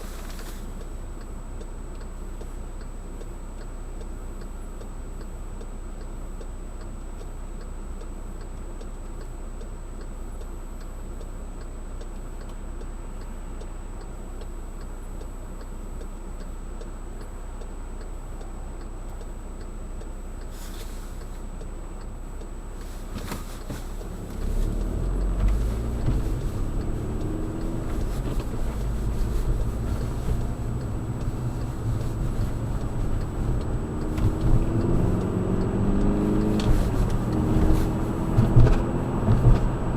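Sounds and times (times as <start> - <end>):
car hum: 0.0 - 39.9
turn signal ticking: 0.0 - 39.9
car engine pulling away: 22.3 - 39.9.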